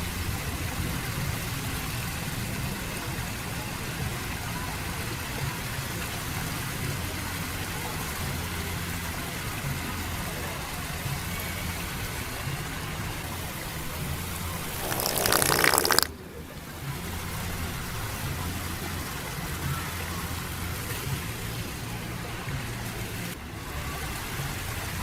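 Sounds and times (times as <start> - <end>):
squeeze toy fart noise: 14.6 - 16.1.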